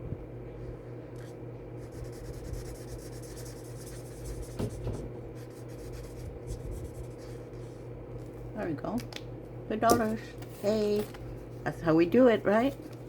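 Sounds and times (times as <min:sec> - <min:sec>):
steady low hum: 0:00.0 - 0:13.0
scratching and rubbing on paper: 0:01.8 - 0:07.8.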